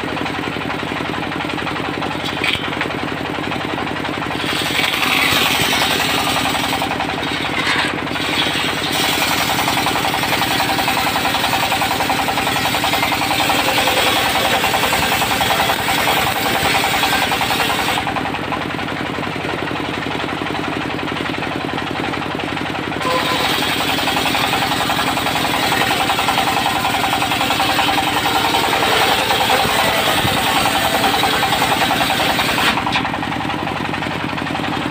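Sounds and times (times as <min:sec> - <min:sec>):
diesel engine running: 0:00.0 - 0:34.9
saw blade cutting wood: 0:01.8 - 0:03.0, 0:04.1 - 0:18.6, 0:23.0 - 0:33.2.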